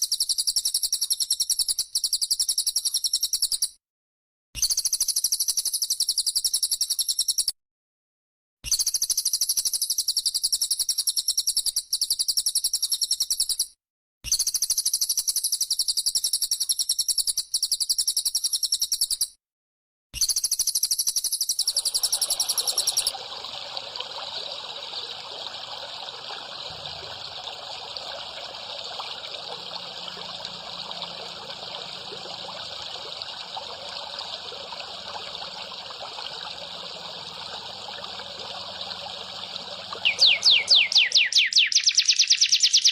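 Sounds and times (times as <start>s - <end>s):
trickle of running water: 20.2s - 42.9s
high-pitched bird trill: 40.0s - 42.2s.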